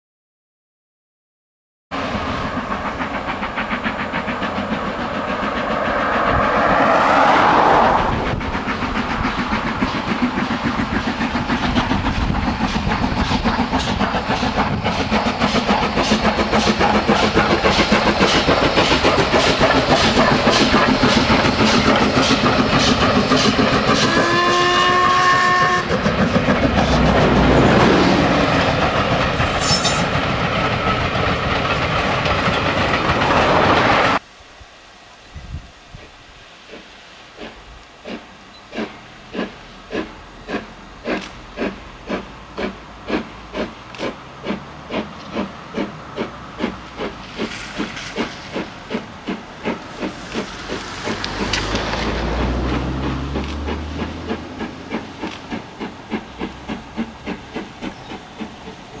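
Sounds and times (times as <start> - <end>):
steam locomotive exhaust beat: 1.9 - 59.0
steam whistle blast: 24.0 - 25.9.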